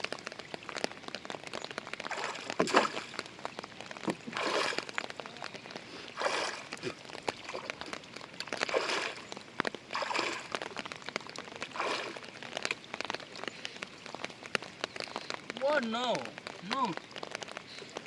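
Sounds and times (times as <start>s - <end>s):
water splashing and sloshing: 0.0s - 18.0s.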